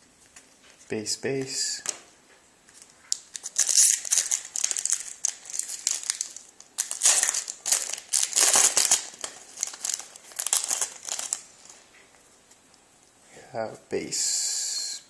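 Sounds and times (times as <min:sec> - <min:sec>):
foil wrapper crinkling and tearing: 0:02.8 - 0:11.8.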